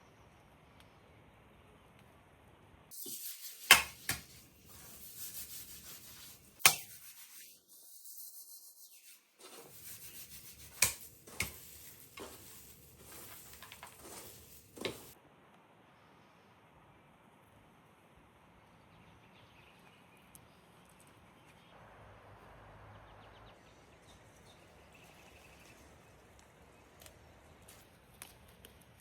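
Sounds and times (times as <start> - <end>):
rubbing and scraping: 2.9 - 15.2.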